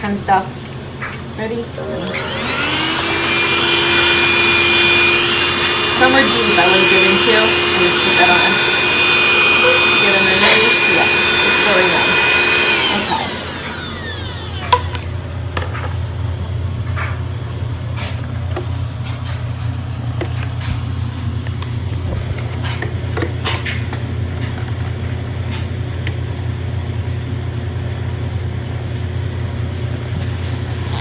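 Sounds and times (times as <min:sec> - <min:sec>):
handheld vacuum cleaner humming: 0:01.8 - 0:15.1, 0:30.2 - 0:31.0.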